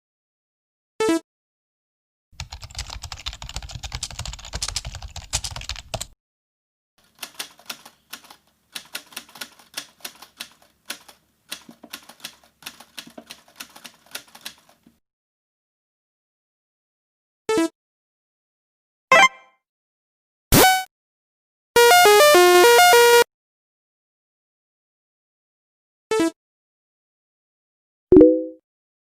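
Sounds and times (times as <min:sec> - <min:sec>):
keyboard typing: 0:02.4 - 0:06.2, 0:07.0 - 0:14.8.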